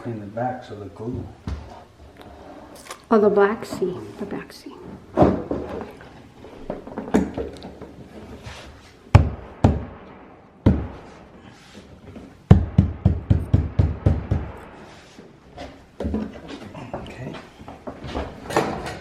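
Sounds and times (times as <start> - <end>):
hammer knocks: 12.5 - 14.7.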